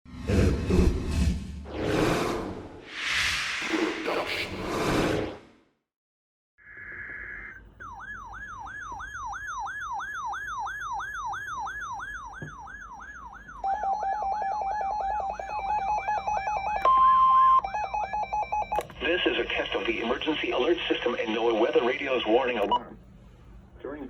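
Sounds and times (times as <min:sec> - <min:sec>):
warbling siren-like alarm tone: 0:06.6 - 0:16.8
loud steady alarm tone: 0:06.9 - 0:18.6.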